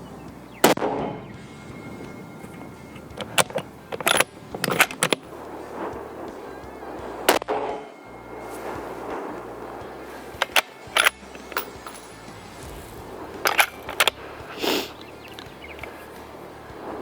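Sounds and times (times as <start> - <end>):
gusty wind: 0.0 - 17.0
rifle shot with echo: 0.6 - 1.4, 3.3 - 8.0
sharp clicks and knocks: 2.5 - 6.0, 10.4 - 17.0.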